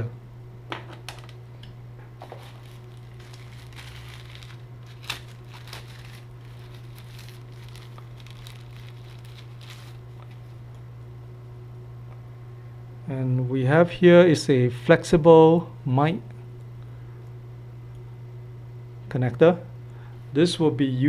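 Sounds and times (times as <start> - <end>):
low hum: 0.0 - 13.0
plastic packaging crinkling: 2.2 - 10.6.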